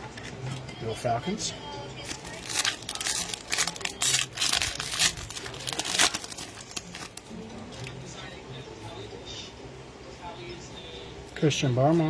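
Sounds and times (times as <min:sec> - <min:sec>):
card pack wrapper tearing: 0:02.1 - 0:07.2.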